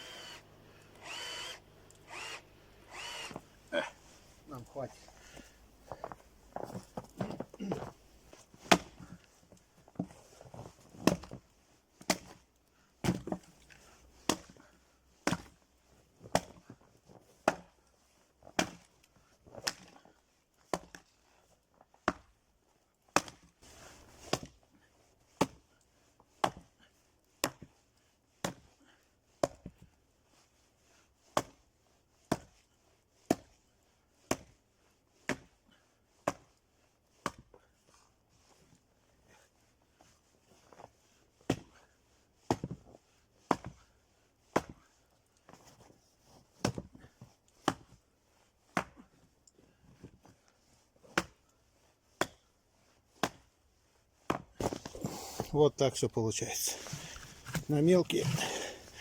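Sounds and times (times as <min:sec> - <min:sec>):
wood splitter chopping blows: 0:56.7 - 0:59.0.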